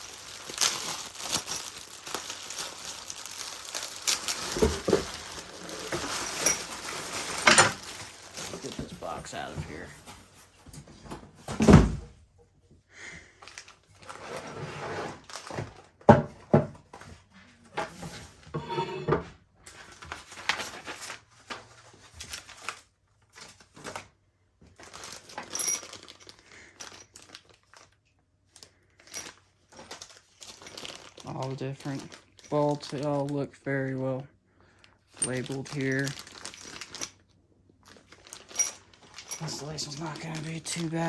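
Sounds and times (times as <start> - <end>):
plastic bags rustling: 0.0 - 10.6, 15.2 - 16.0, 19.7 - 24.1, 24.7 - 41.0.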